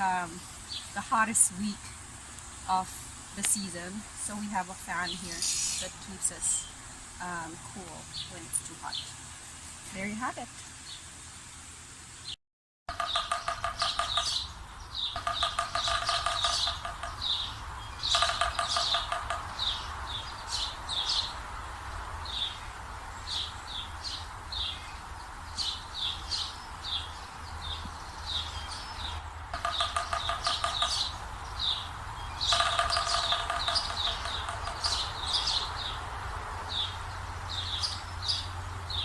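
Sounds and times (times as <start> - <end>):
songbirds chirping: 0.0 - 39.0
buzzy bird trill: 5.0 - 6.7, 12.9 - 21.4, 29.6 - 36.0.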